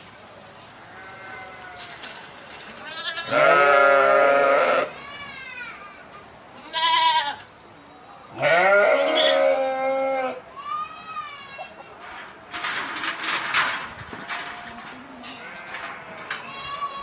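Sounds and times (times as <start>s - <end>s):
sheep bleating: 2.9s - 5.8s, 6.6s - 7.4s, 8.3s - 11.8s.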